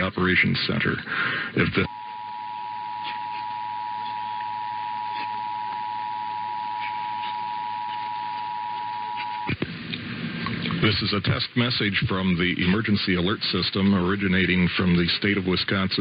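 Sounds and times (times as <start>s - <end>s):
two-tone alert signal: 1.9s - 9.5s.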